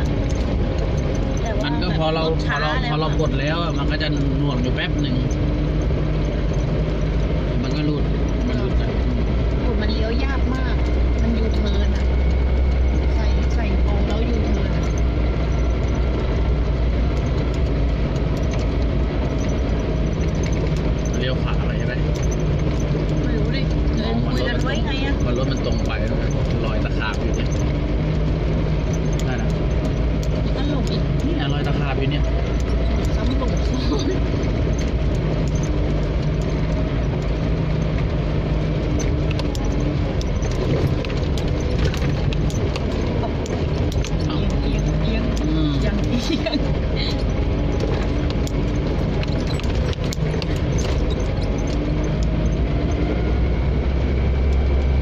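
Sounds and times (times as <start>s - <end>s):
road noise: 0.0s - 55.0s
vehicle engine drone: 0.0s - 55.0s
light clicks and rattles: 38.8s - 53.1s.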